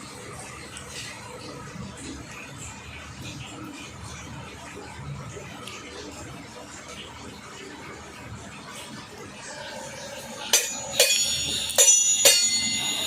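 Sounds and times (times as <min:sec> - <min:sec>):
sharp metallic clinks: 0:10.5 - 0:13.0.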